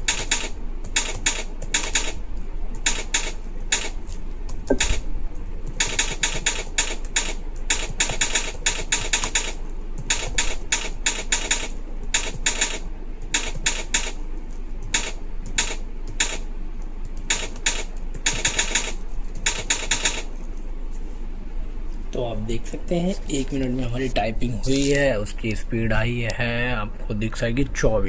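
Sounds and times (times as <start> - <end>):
typing on computer keyboard: 0.1 - 2.2, 2.8 - 4.0, 5.7 - 14.2, 14.9 - 16.4, 17.0 - 20.3.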